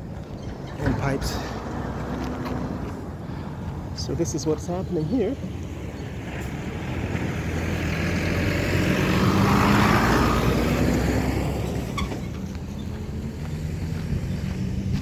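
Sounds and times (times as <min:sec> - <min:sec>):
vehicle driving past: 0:05.6 - 0:15.0.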